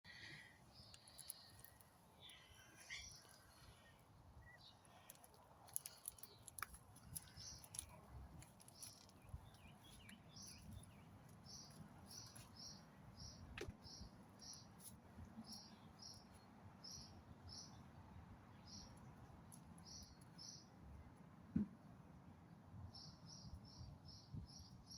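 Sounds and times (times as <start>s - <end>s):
small bird chirping: 0.2s - 8.0s, 8.6s - 17.8s.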